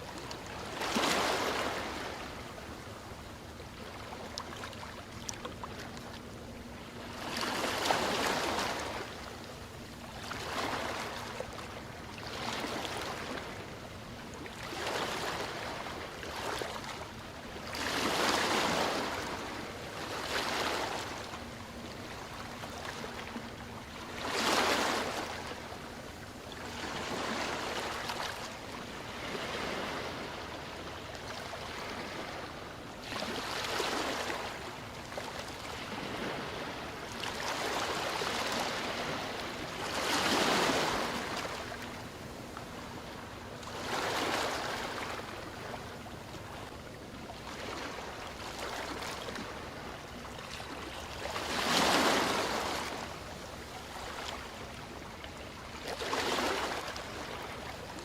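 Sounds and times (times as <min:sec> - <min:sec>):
ocean waves breaking: 0:00.1 - 0:02.5, 0:06.8 - 0:09.2, 0:17.7 - 0:26.0, 0:26.6 - 0:46.7, 0:47.4 - 0:57.8.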